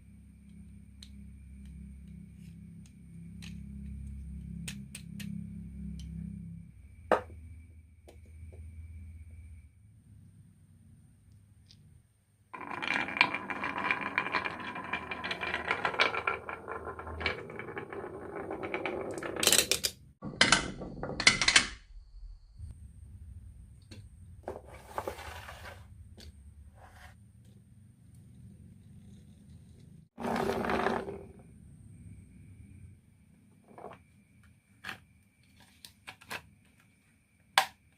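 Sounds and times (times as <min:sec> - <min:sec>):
marbles rattling down wooden run: 0:12.6 - 0:20.0, 0:30.2 - 0:31.4.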